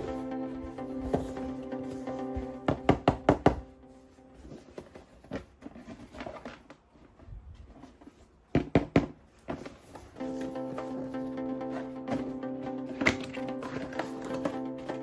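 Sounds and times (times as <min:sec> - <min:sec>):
soft handling sounds: 0:03.7 - 0:08.5, 0:09.2 - 0:15.0.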